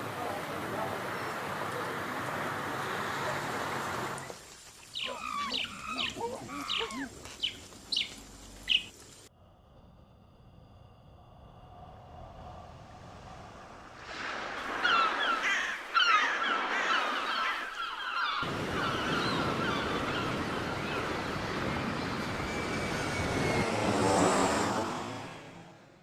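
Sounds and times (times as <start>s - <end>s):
rushing surf: 0.0s - 4.4s, 12.0s - 26.0s
bird calls: 4.9s - 9.0s, 14.7s - 23.5s.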